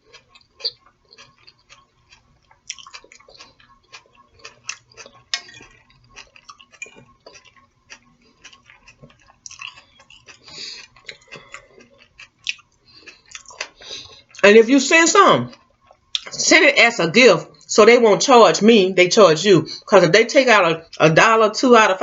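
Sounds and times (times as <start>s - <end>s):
person chewing food: 0.0s - 14.4s, 15.5s - 16.3s.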